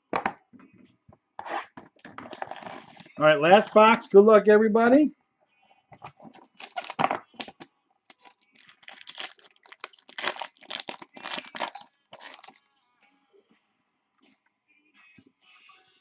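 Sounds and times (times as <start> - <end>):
plastic wrapping crinkling and tearing: 1.9 - 4.0, 6.4 - 12.6.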